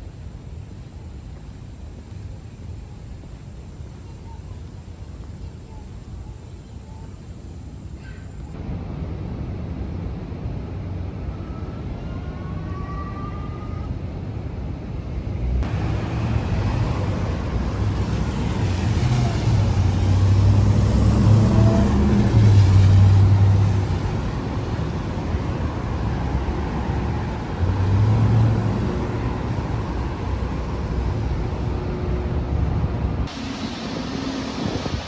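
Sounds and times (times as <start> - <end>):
road rumble of passing cars: 8.5 - 35.0
vehicle passing close by: 15.4 - 35.0.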